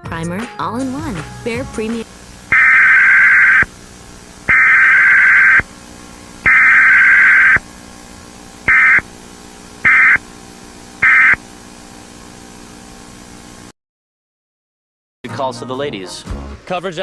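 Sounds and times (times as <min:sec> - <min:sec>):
digital data bursts: 0:02.1 - 0:05.8, 0:06.4 - 0:07.7, 0:08.6 - 0:09.2, 0:09.8 - 0:10.2, 0:11.0 - 0:11.4.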